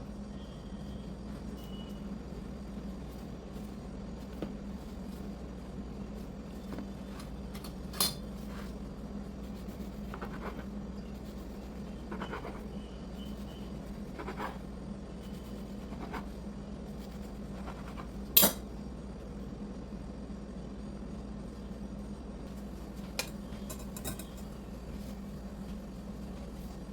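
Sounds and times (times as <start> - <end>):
steady low hum: 0.0 - 26.9
kitchen utensils clinking: 23.2 - 24.5.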